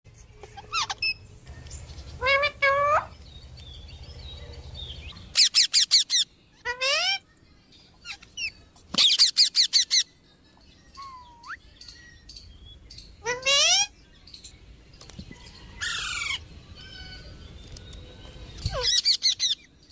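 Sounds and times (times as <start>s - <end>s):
parrot chirping harshly: 0.5s - 1.2s, 5.3s - 7.2s, 9.0s - 10.0s.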